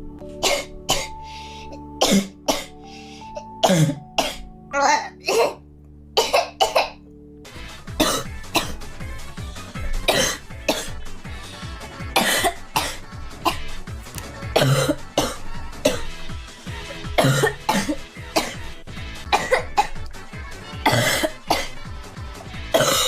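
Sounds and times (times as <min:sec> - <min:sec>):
background music: 0:00.0 - 0:23.0
girl coughing: 0:00.4 - 0:01.2, 0:02.0 - 0:02.7, 0:03.6 - 0:04.5, 0:05.2 - 0:05.6, 0:06.2 - 0:07.0, 0:08.0 - 0:08.8, 0:10.1 - 0:11.0, 0:12.2 - 0:13.7, 0:14.6 - 0:16.1, 0:17.2 - 0:18.7, 0:19.4 - 0:20.0, 0:20.9 - 0:21.8, 0:22.8 - 0:23.0.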